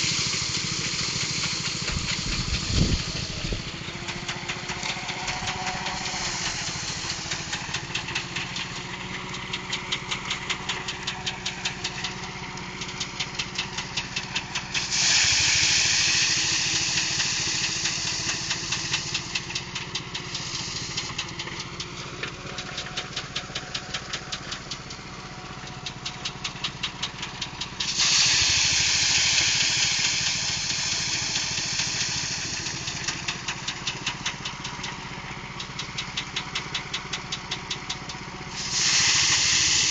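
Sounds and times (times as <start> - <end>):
loud rushing hiss: 0.0 - 9.6, 10.6 - 21.8, 25.4 - 34.4, 38.4 - 39.9
small engine beating rapidly: 0.0 - 39.9.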